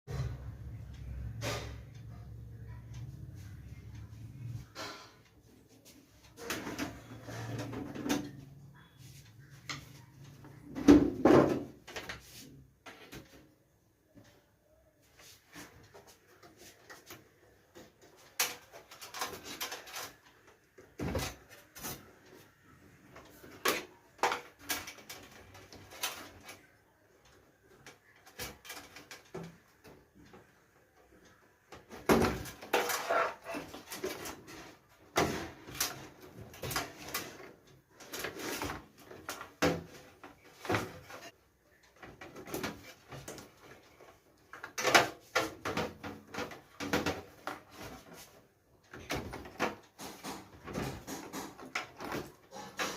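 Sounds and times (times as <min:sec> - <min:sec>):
computer parts clicking and scraping: 0:16.6 - 0:20.5.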